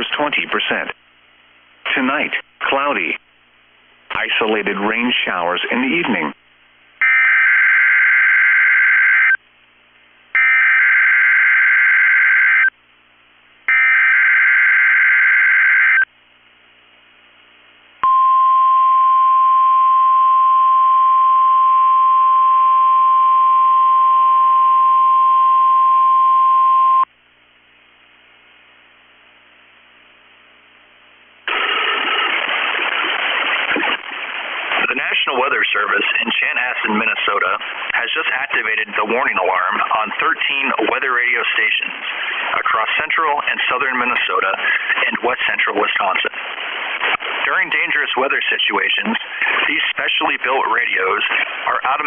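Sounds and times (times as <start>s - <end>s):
steady alarm tone: 10.4s - 12.7s, 13.7s - 16.1s.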